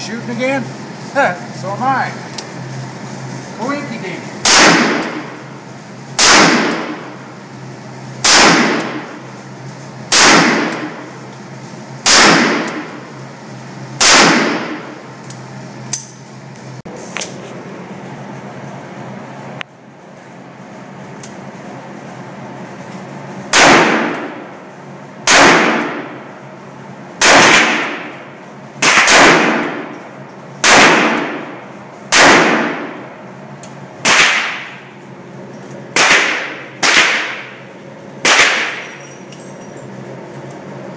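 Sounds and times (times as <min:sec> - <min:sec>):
revolver gunshots echoing: 0:04.4 - 0:05.4, 0:06.2 - 0:07.1, 0:08.2 - 0:09.1, 0:10.1 - 0:11.0, 0:12.0 - 0:13.0, 0:14.0 - 0:14.9, 0:23.5 - 0:24.4, 0:25.2 - 0:26.2, 0:27.2 - 0:28.1, 0:28.8 - 0:29.9, 0:30.6 - 0:33.1, 0:34.0 - 0:34.9, 0:35.9 - 0:39.0.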